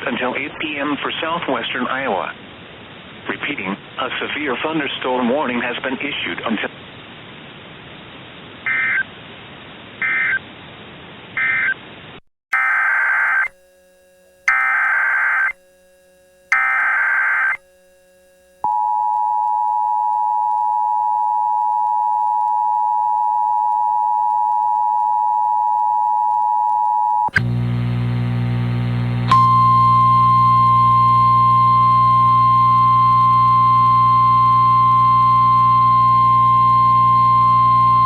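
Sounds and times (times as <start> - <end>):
loud buzz: 27.3 - 38.0.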